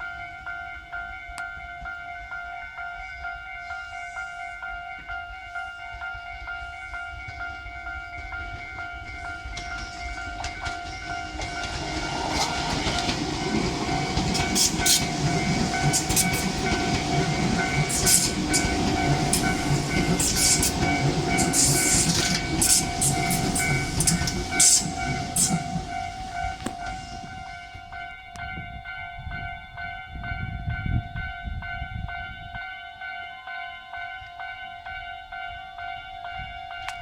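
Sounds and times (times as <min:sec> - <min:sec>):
level-crossing alarm ringing: 0:00.0 - 0:37.0
train wheels rumbling on rails: 0:03.3 - 0:32.6.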